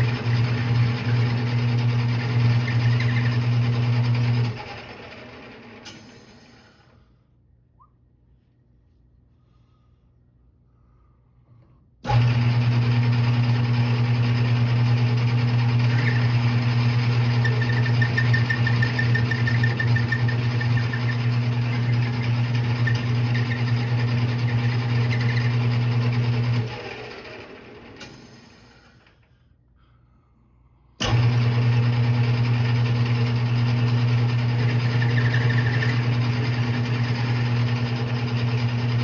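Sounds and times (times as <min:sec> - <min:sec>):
metal lathe humming: 0:00.0 - 0:05.7, 0:12.1 - 0:28.0, 0:31.1 - 0:39.0
lathe spinning down: 0:00.0 - 0:06.1, 0:12.1 - 0:28.7, 0:31.0 - 0:39.0.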